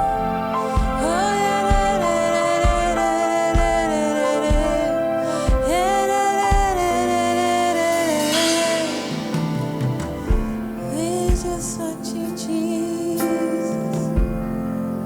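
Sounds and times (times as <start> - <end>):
low kick drum beat: 0.0 - 7.0, 9.8 - 11.8
person singing long note: 0.0 - 14.2
sustained keyboard chords: 0.0 - 15.0.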